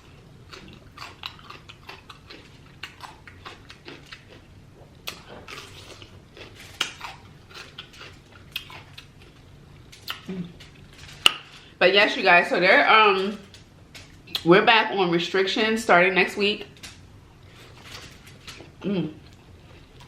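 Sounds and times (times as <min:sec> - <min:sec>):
wet chewing and mouth smacking: 0:00.0 - 0:11.5, 0:16.8 - 0:20.0.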